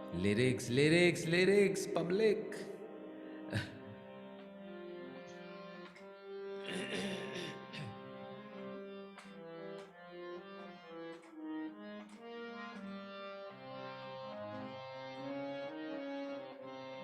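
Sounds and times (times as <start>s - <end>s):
reed instrument melody: 2.8s - 17.0s.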